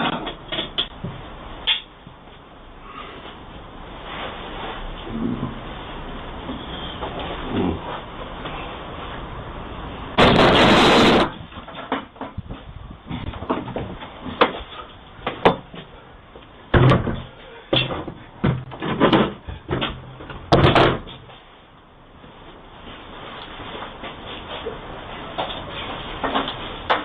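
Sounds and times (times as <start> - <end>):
loud rush of noise: 9.5 - 11.5
irregular knocks and thuds: 16.7 - 21.2.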